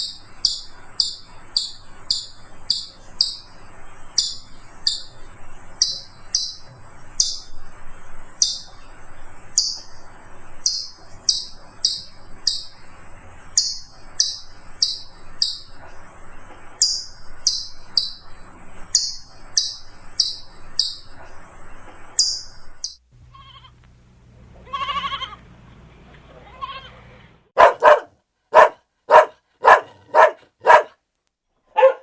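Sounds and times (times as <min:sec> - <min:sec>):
animal bleating: 0:23.3 - 0:23.8, 0:24.6 - 0:25.4, 0:26.4 - 0:27.0
loud barks: 0:27.6 - 0:31.0, 0:31.8 - 0:32.0.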